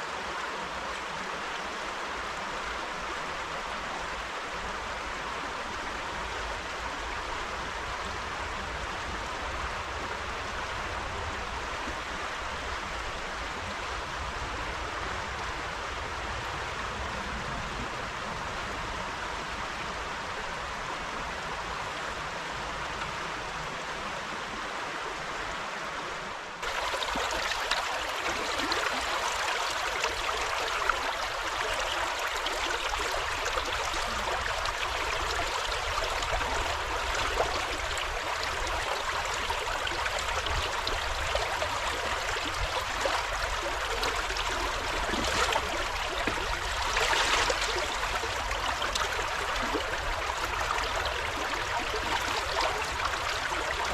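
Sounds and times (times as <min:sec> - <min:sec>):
river running over stones: 0:23.0 - 0:53.9.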